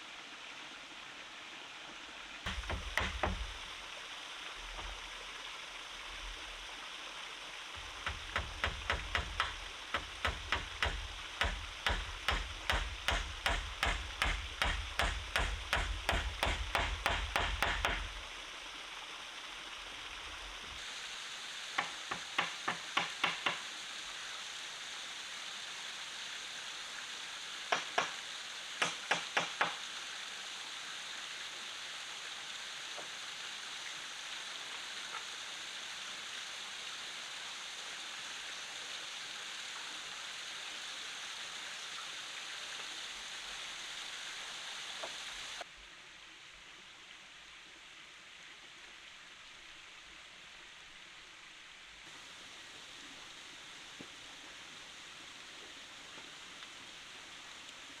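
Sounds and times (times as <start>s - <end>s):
forest stream rushing: 0.0s - 58.0s
hand tool striking wood: 2.5s - 3.6s, 7.8s - 18.2s, 21.8s - 23.7s, 27.7s - 29.8s.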